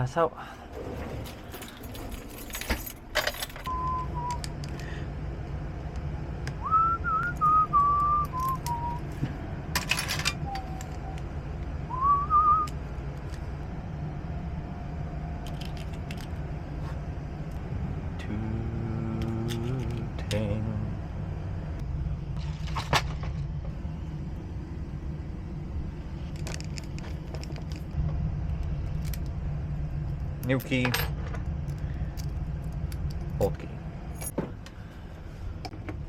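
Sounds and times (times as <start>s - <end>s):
steady low hum: 0.0s - 36.0s
person whistling a tune: 3.7s - 4.4s, 6.6s - 9.0s, 10.4s - 11.2s, 11.9s - 12.7s.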